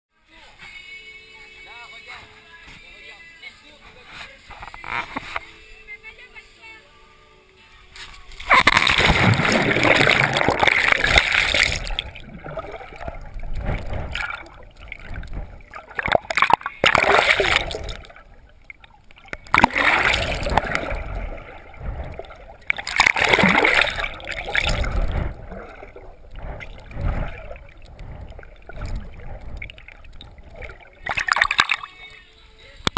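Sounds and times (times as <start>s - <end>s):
water gurgling and sloshing: 8.1s - 32.2s
river water splashing: 8.3s - 32.2s.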